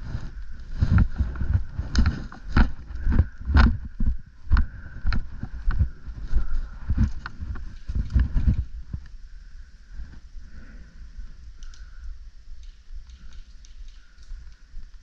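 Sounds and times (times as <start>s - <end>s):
clothing rustling on microphone: 0.0s - 9.1s
footsteps on rough ground: 0.0s - 9.1s.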